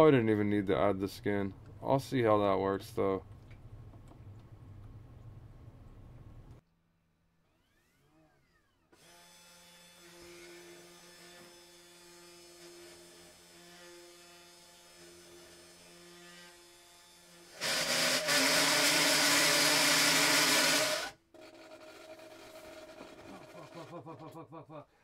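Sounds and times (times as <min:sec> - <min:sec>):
router bit cutting wood: 0:07.5 - 0:23.8.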